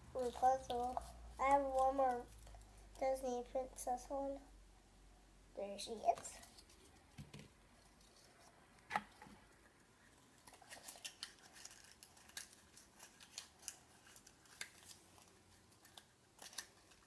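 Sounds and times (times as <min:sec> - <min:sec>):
toy packaging clicks and crinkles: 0:10.4 - 0:17.0.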